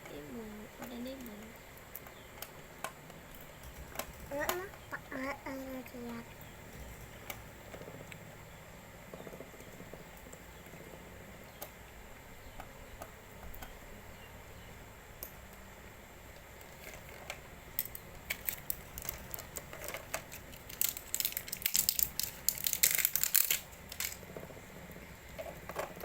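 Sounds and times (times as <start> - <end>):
plastic packaging crinkling: 16.7 - 24.2.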